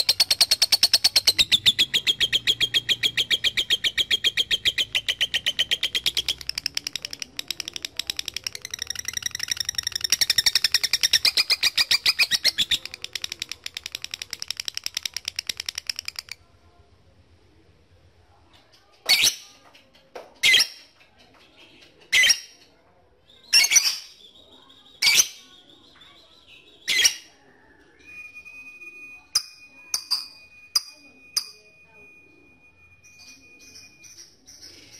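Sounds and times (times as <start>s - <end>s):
lovebird chattering trill: 0.0s - 16.4s
faint steady high tone: 24.4s - 34.9s.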